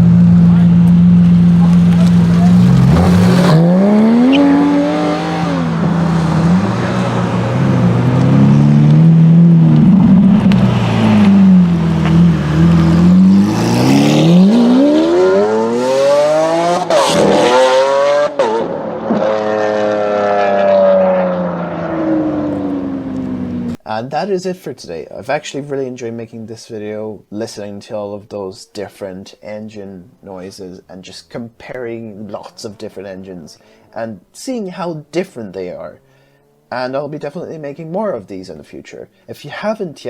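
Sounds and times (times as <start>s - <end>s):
car engine revving: 0.0s - 23.8s.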